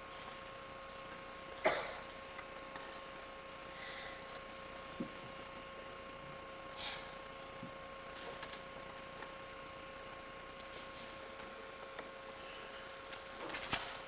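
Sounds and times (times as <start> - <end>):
electrical hum and hiss: 0.0 - 14.0.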